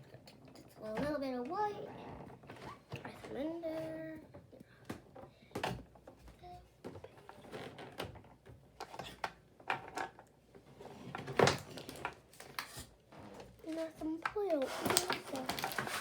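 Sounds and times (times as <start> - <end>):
plastic toy pieces clicking and knocking: 14.2 - 16.0.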